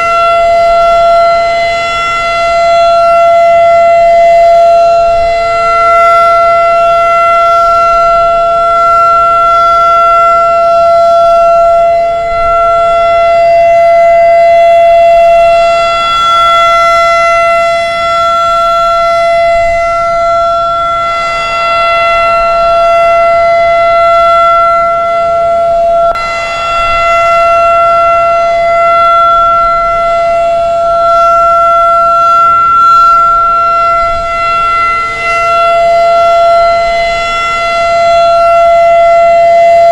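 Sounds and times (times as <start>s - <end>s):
warning siren wailing: 0.0s - 39.9s.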